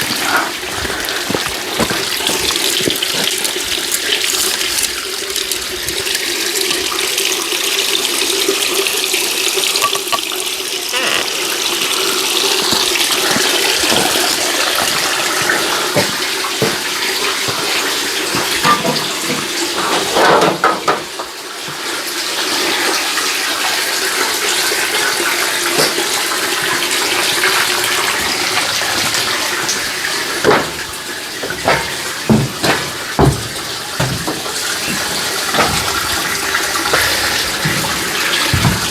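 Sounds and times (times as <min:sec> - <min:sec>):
tap water running: 0:00.0 - 0:38.9
parts clunking: 0:09.7 - 0:11.3, 0:12.6 - 0:21.1, 0:30.4 - 0:38.9.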